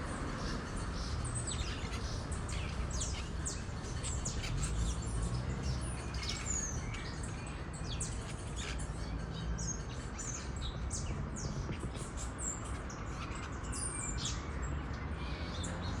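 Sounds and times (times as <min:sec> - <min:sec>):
parakeets chattering: 0:00.4 - 0:05.0.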